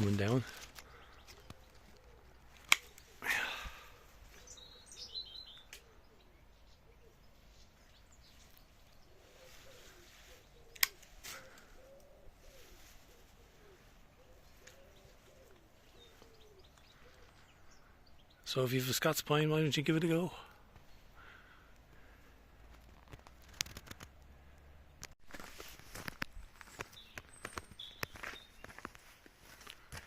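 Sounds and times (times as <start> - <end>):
rustle: 0.0 - 17.8, 22.0 - 30.0
birds chirping: 0.0 - 22.8, 24.4 - 30.0
sharp clicks: 2.6 - 3.1, 10.7 - 11.1
pigeon cooing: 9.1 - 17.6.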